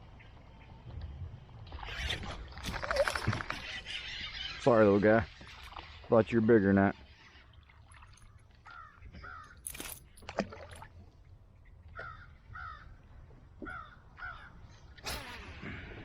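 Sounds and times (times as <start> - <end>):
bird calling: 1.7 - 6.0, 8.2 - 9.9, 11.9 - 13.0, 13.6 - 15.6.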